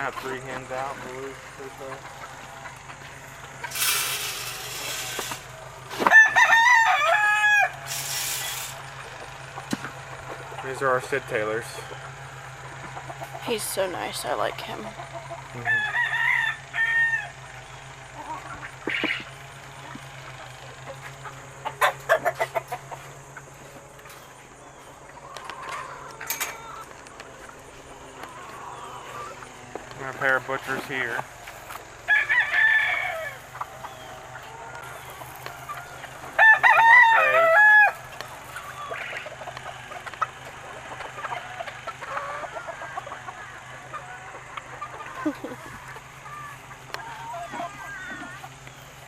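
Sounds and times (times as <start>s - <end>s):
chicken clucking: 0.0s - 49.0s
rooster crowing: 5.9s - 7.9s, 15.6s - 17.4s, 32.0s - 33.6s, 35.5s - 38.1s.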